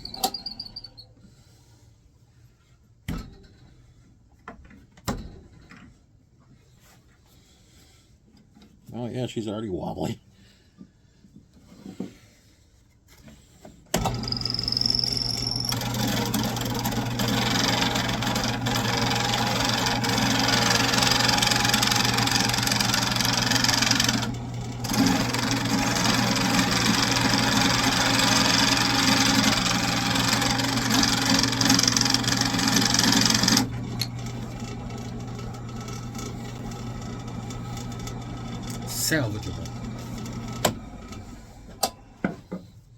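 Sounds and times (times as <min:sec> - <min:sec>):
wood lathe motor humming: 0:14.0 - 0:41.6.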